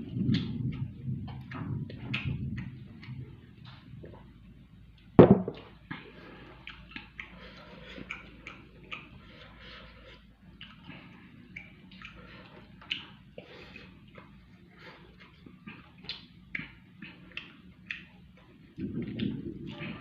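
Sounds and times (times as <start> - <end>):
chewing clicks and smacks: 0.1 - 5.1, 5.8 - 20.0
loud knock: 5.2 - 5.6.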